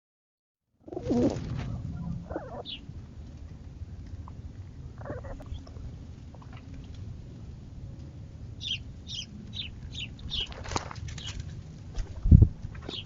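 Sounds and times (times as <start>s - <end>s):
steady low rumble: 0.8s - 13.0s
pigeons cooing: 0.9s - 2.9s, 3.6s - 6.8s.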